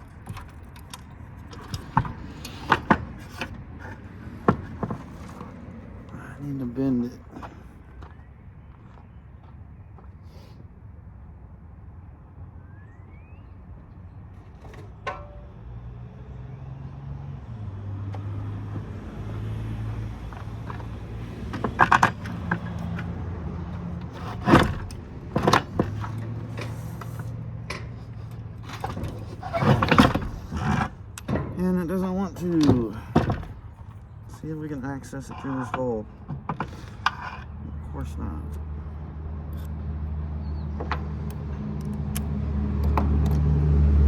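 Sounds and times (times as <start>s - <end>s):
hand tools clanking on metal: 0.0s - 8.0s, 20.1s - 38.7s.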